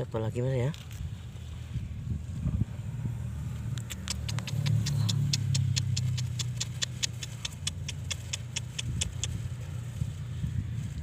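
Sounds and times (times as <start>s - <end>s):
rapid ticking: 3.9s - 9.4s.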